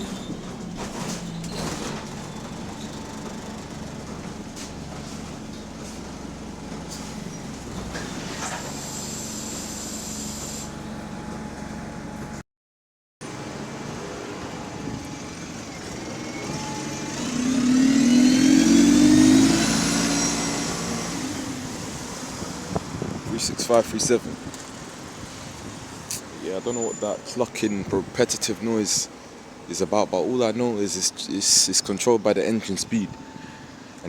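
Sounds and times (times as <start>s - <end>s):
bus engine revving: 0.0s - 12.4s, 13.4s - 23.2s.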